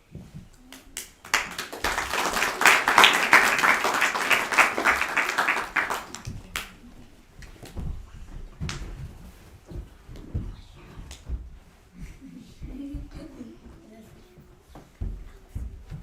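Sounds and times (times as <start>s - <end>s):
children applauding: 1.2s - 6.7s.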